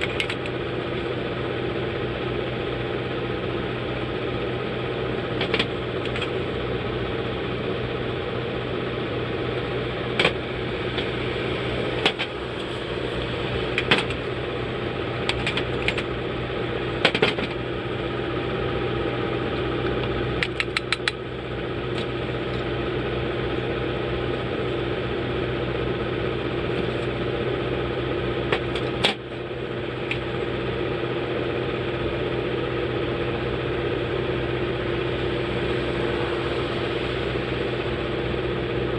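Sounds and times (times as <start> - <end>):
steady machine hum: 0.0 - 38.9
sharp clicks: 20.4 - 21.2.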